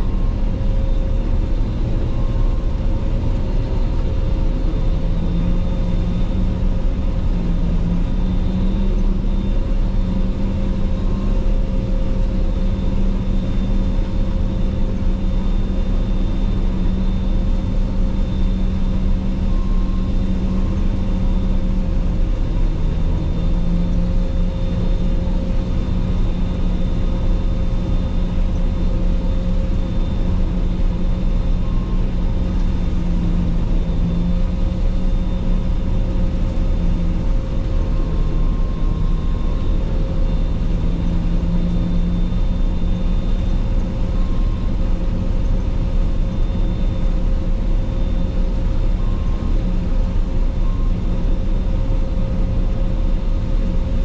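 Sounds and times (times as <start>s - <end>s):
combine harvester engine drone: 0.0s - 54.0s.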